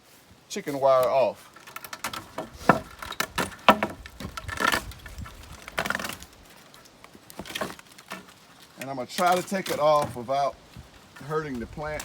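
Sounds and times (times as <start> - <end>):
wire scraping rustles: 0.0 - 12.0
chicken wire clicking and rattling: 1.4 - 10.0.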